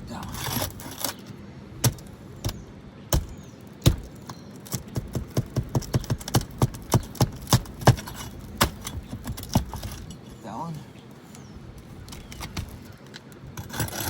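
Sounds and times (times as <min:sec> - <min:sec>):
pry bar knocking on shingles: 0:01.8 - 0:10.1.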